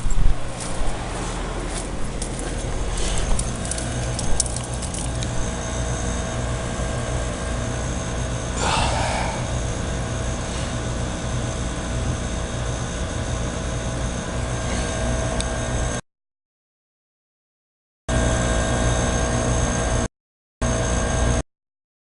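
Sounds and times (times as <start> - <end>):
heat pump running: 0.0 - 16.0.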